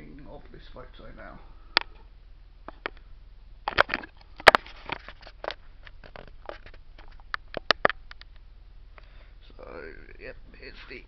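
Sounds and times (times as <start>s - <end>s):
package crackling and rustling: 3.7s - 8.3s.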